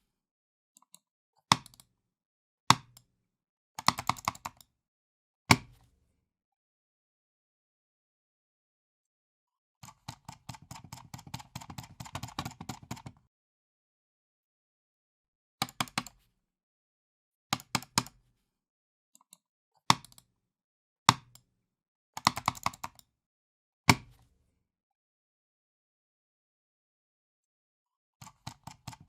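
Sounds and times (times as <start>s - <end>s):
computer mouse clicking: 9.8s - 13.2s, 15.6s - 16.2s, 19.2s - 20.3s, 22.2s - 23.1s, 28.2s - 29.0s.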